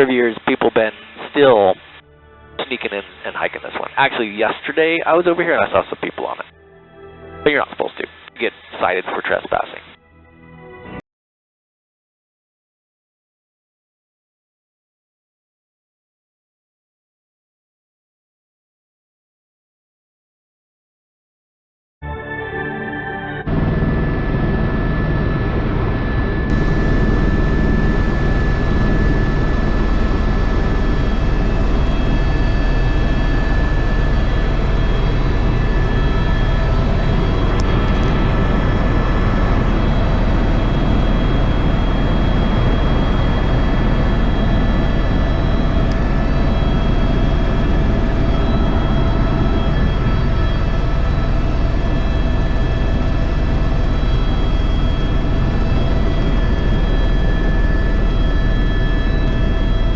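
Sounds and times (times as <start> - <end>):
steady whine: 0.0 - 10.0, 23.2 - 59.9
helicopter engine and rotor noise: 23.5 - 59.9.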